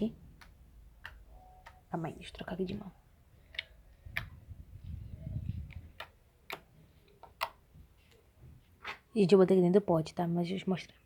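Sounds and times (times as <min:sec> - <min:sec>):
slime clicking and popping: 0:06.0 - 0:07.6.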